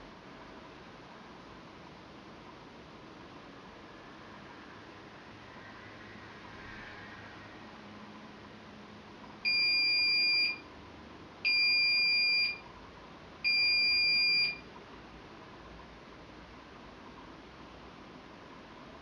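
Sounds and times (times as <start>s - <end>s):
washing machine beeping: 9.4s - 10.7s, 11.4s - 12.7s, 13.4s - 14.7s.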